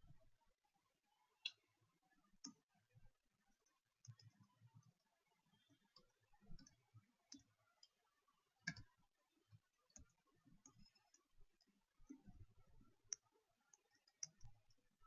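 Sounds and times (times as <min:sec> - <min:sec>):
faint scattered clicks: 0:03.6 - 0:08.0, 0:08.6 - 0:14.9.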